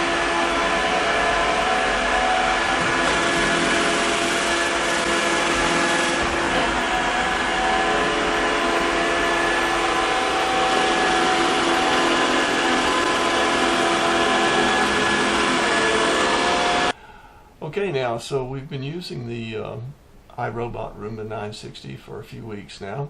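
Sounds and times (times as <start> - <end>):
robot vacuum motor whine: 0.0 - 16.9.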